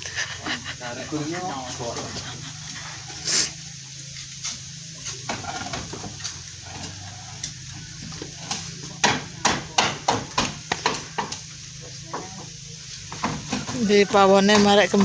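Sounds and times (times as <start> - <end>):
sharp knocks: 9.0 - 11.4.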